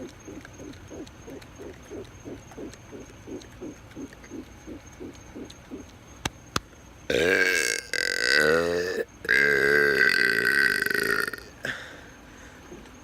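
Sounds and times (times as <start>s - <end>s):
man burping: 7.1s - 11.9s.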